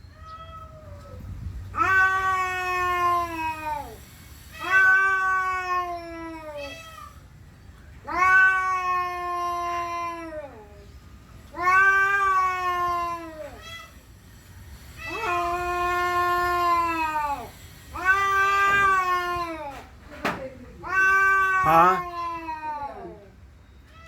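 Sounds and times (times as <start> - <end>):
cat yowling: 0.1 - 4.0, 4.6 - 7.2, 8.0 - 10.8, 11.5 - 14.0, 15.0 - 19.9, 20.8 - 23.4.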